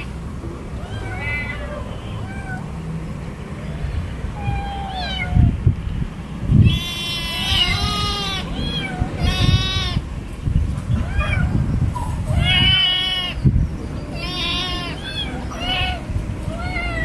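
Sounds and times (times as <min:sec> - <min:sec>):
kittens meowing: 0:00.8 - 0:02.7, 0:03.6 - 0:05.7, 0:06.6 - 0:10.1, 0:10.9 - 0:17.0.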